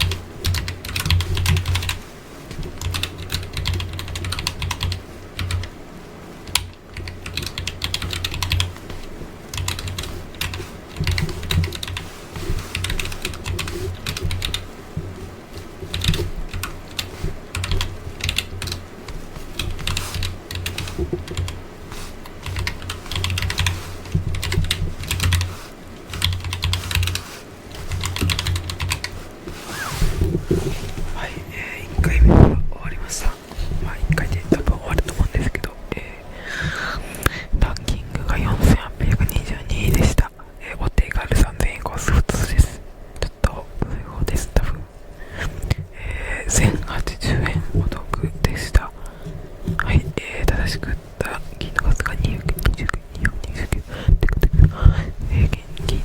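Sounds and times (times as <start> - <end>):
typing on computer keyboard: 0.0 - 2.0, 2.8 - 5.7, 6.5 - 8.7, 9.5 - 14.6, 15.9 - 18.8, 19.6 - 21.6, 22.4 - 25.5, 26.1 - 27.2, 27.8 - 29.2.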